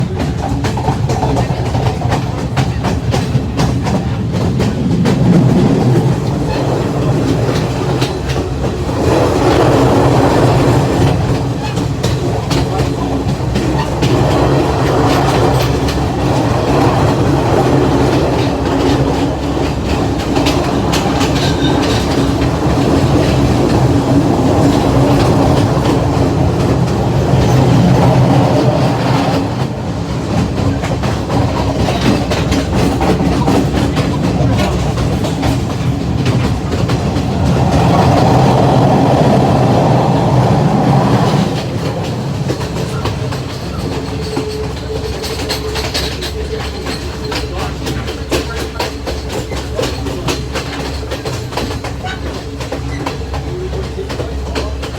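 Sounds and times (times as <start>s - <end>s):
rail joints clattering: 0.0s - 54.9s
train wheels rumbling on rails: 0.0s - 54.9s.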